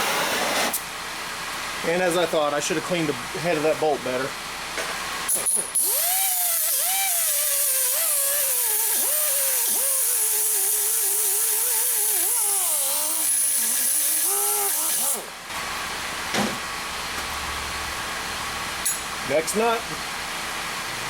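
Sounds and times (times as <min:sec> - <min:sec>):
power grinder running: 0:05.8 - 0:15.3.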